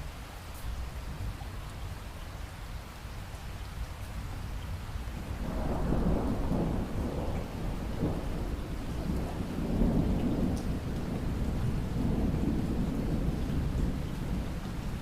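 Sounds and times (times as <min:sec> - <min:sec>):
light rain falling and dripping: 0:00.0 - 0:15.0
distant thunder rumbling: 0:05.1 - 0:15.0.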